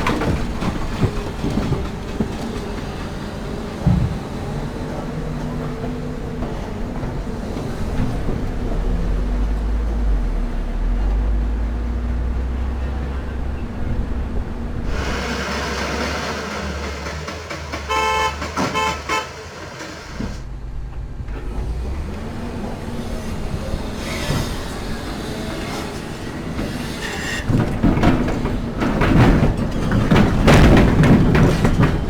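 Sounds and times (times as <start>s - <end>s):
heavy diesel engines rumbling: 0.0s - 32.0s
vehicle horn toots: 17.7s - 20.4s.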